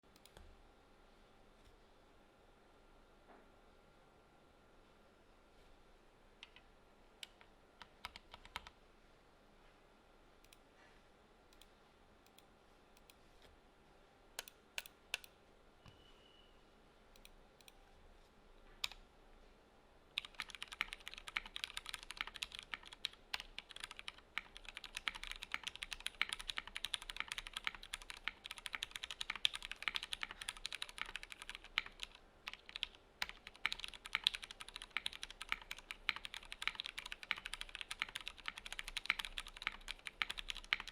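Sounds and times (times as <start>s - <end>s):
mechanical keyboard typing: 7.2s - 8.8s, 20.1s - 40.9s.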